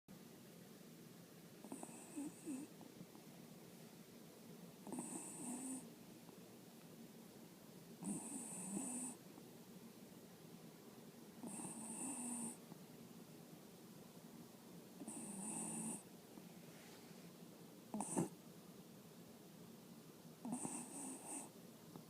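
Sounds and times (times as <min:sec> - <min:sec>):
person snoring with whistling hiss: 0:01.7 - 0:02.7, 0:04.9 - 0:05.8, 0:08.0 - 0:09.2, 0:11.4 - 0:12.6, 0:15.0 - 0:16.0, 0:20.5 - 0:21.5.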